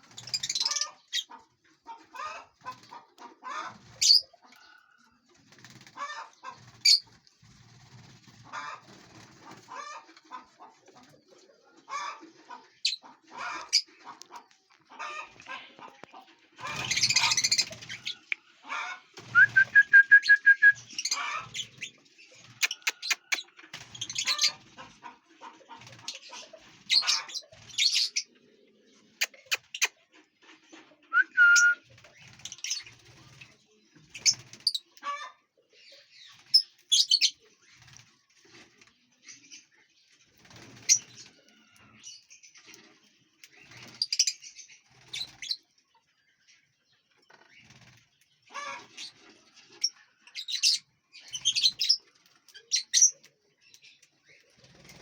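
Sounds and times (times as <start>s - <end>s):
wings flapping: 0.0s - 0.7s, 5.4s - 10.0s, 16.6s - 18.2s, 19.2s - 21.8s, 22.4s - 25.0s, 31.6s - 33.5s, 34.2s - 34.7s, 40.3s - 41.4s, 43.6s - 44.1s, 54.6s - 55.0s
lovebirds chirping: 0.0s - 7.2s, 11.3s - 30.0s, 39.2s - 55.0s.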